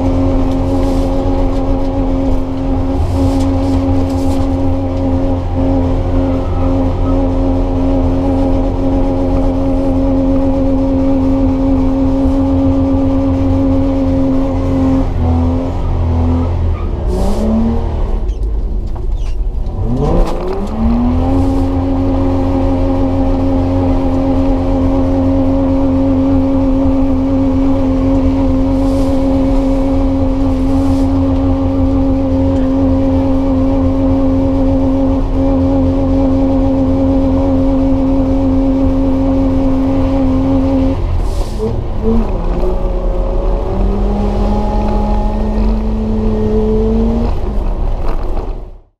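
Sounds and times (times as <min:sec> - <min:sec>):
engine revving high: 0:19.7 - 0:48.3.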